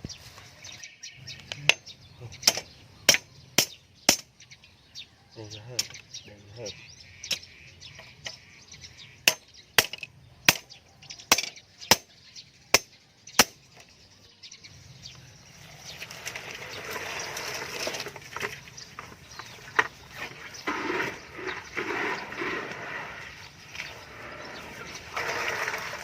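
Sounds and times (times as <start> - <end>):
rushing scraping noise: 15.7 - 26.0.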